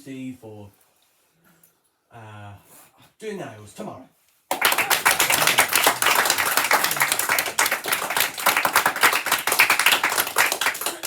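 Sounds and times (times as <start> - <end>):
people clapping: 4.5 - 11.0.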